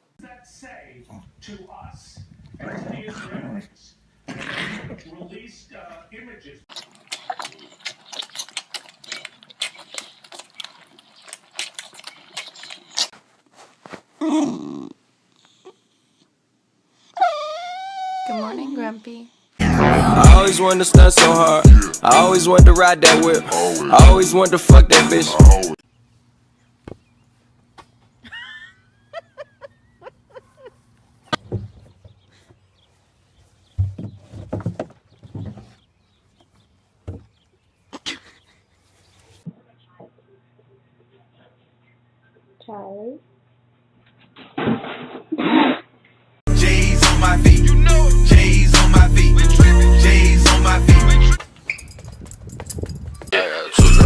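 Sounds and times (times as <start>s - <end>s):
small animal high calls: 17.2s - 18.6s
person calling dog: 17.3s - 20.6s.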